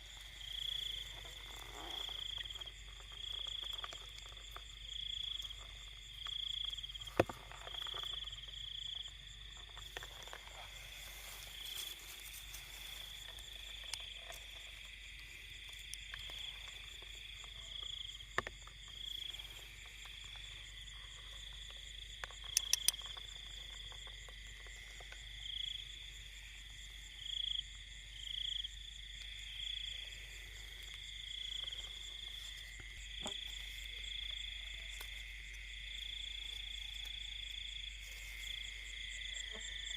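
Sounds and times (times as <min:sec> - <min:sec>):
frogs and insects chorus: 0:00.0 - 0:39.9
sharp clicks: 0:22.5 - 0:23.0.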